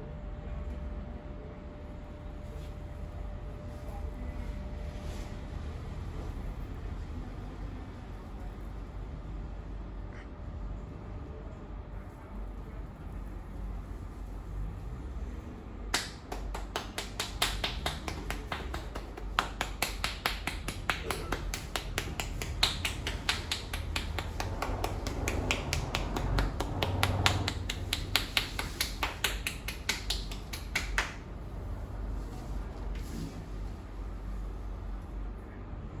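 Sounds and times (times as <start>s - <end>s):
hands clapping and slapping head: 15.9s - 31.2s.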